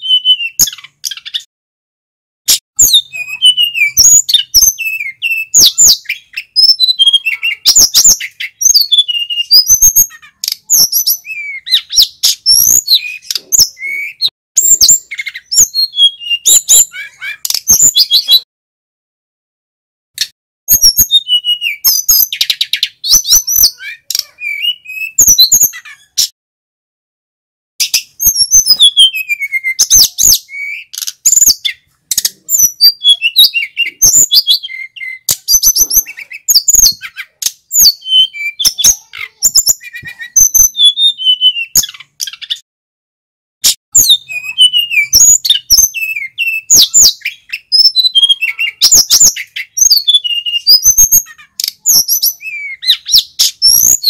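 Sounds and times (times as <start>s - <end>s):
flycatcher singing: 27.8s - 42.6s, 44.0s - 54.0s.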